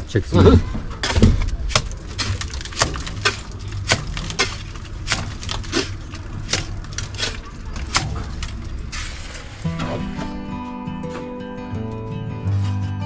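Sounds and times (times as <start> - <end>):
trowel scraping and slapping mortar: 0.4 - 10.6.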